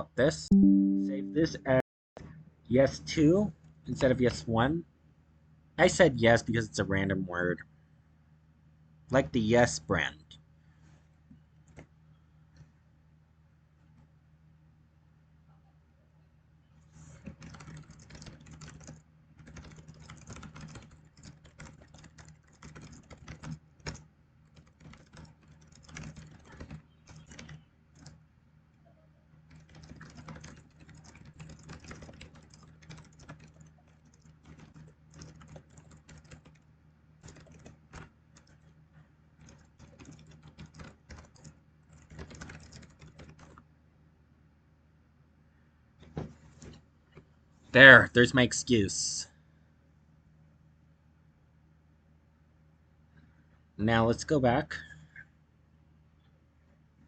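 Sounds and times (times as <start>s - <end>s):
low electrical hum: 0.0s - 57.0s
typing on a keyboard: 17.2s - 28.2s, 29.4s - 43.7s.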